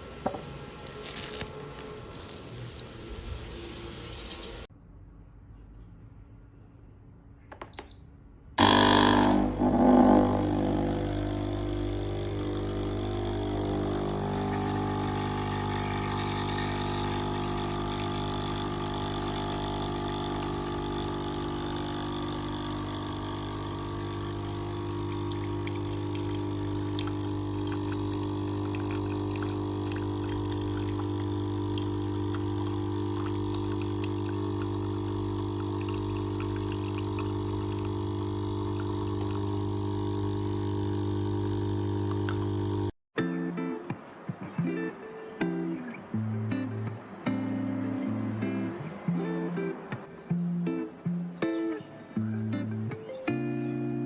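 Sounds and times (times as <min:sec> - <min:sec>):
coffee machine pump humming: 0:08.6 - 0:43.0.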